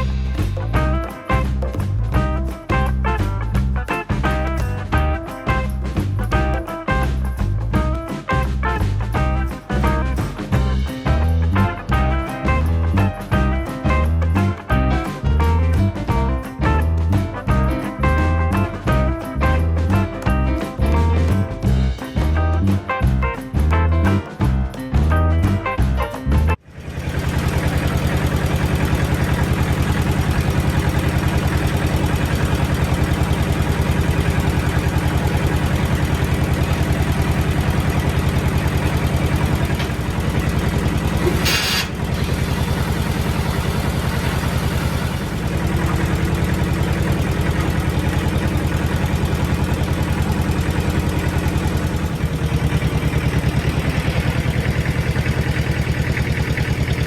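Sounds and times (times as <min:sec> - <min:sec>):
engine running with fast pulse: 0:00.0 - 0:22.4, 0:26.6 - 0:57.0
short hiss: 0:41.3 - 0:42.0.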